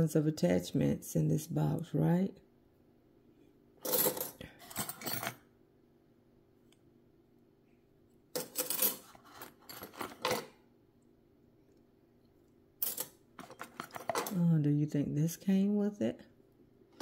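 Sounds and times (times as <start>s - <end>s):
small metal parts clinking: 8.4s - 10.5s.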